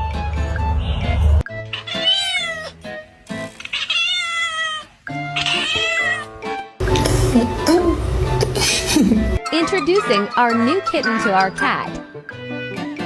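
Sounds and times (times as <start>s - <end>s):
background music: 0.0s - 13.0s
cat meowing: 1.7s - 2.8s, 3.6s - 6.4s.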